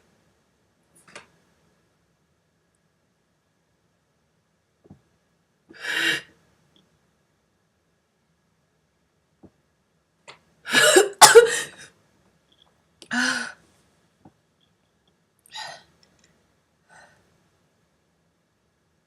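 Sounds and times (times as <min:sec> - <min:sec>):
woman sneezing: 0:10.7 - 0:11.8.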